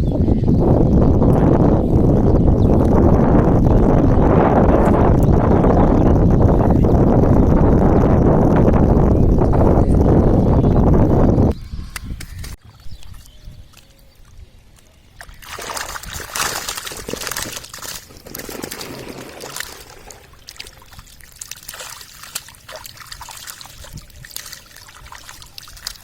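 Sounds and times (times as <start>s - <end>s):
water splashing and trickling: 12.6s - 26.0s.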